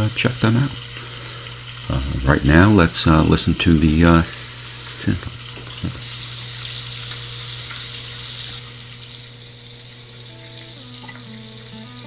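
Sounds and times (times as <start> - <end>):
bananas sizzling in a pan: 0.0 - 12.0
faint music: 10.2 - 12.0.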